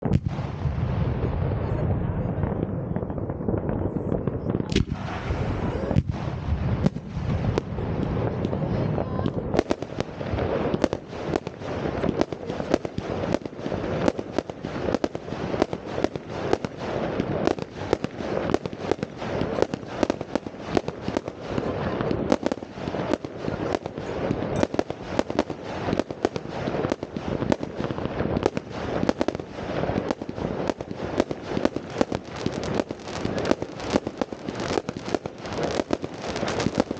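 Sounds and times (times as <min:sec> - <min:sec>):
fireworks bangs and crackle: 0:00.0 - 0:36.9.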